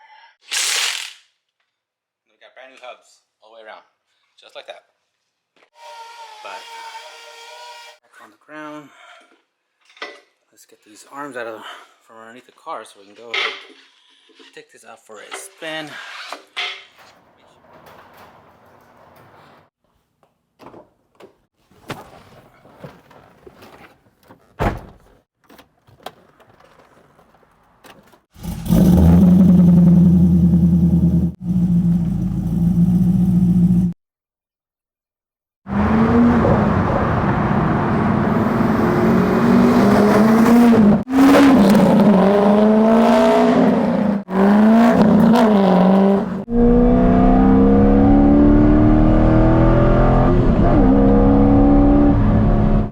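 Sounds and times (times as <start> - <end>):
loud car engine revving: 28.4 - 34.0, 35.7 - 52.9.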